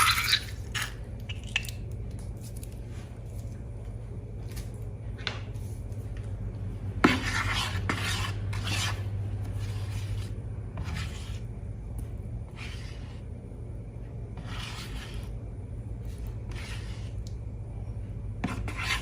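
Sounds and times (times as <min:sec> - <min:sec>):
utensil scraping slime in bowl: 0:00.0 - 0:01.8, 0:07.0 - 0:11.6, 0:12.5 - 0:13.3, 0:14.3 - 0:15.4, 0:16.0 - 0:17.4, 0:18.4 - 0:19.0
low electrical hum: 0:00.0 - 0:19.0.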